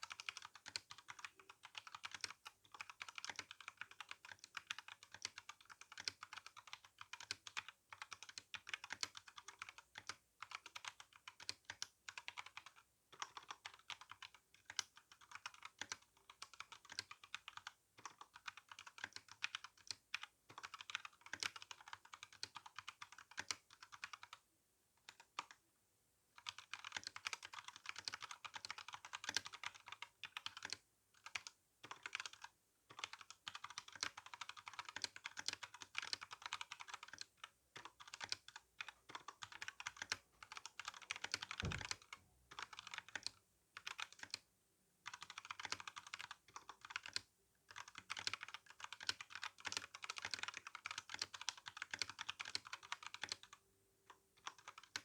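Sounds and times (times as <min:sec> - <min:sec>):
mechanical keyboard typing: 0:00.0 - 0:24.4, 0:26.4 - 0:44.4, 0:45.0 - 0:55.0
low thud: 0:41.6 - 0:41.9.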